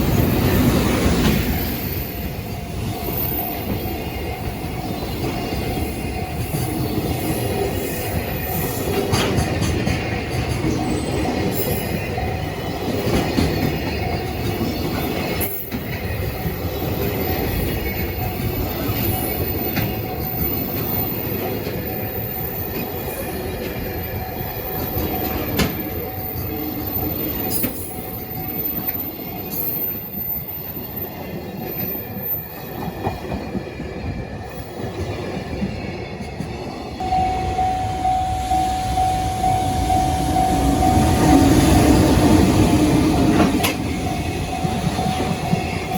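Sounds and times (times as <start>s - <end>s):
train wheels rumbling on rails: 0.0s - 45.9s
steady high tone: 35.6s - 45.9s.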